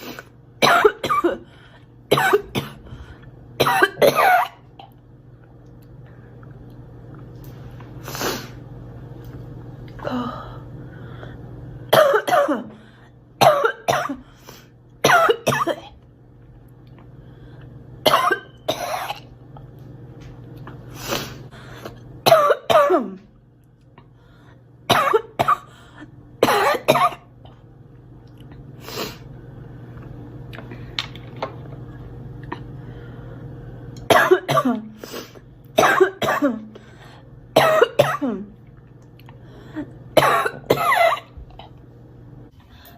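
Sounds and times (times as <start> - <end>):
steady low hum: 0.0 - 42.9
girl coughing: 0.6 - 1.5, 2.1 - 2.8, 3.6 - 4.7, 11.9 - 12.8, 13.4 - 14.2, 15.0 - 16.0, 18.0 - 19.3, 22.2 - 23.2, 24.9 - 25.7, 26.4 - 27.3, 34.1 - 35.0, 35.8 - 36.8, 37.6 - 38.5, 40.2 - 41.4.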